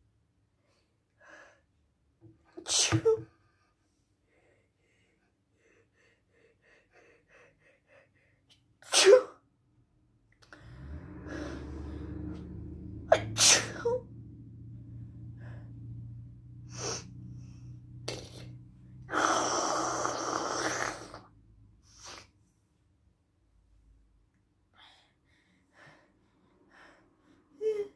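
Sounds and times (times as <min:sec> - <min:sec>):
person sneezing: 0:08.8 - 0:09.4, 0:13.1 - 0:13.9
steady low hum: 0:10.4 - 0:20.0.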